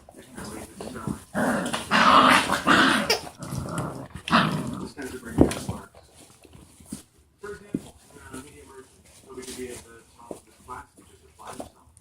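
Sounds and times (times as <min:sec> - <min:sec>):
puppy growling: 0:00.4 - 0:06.6.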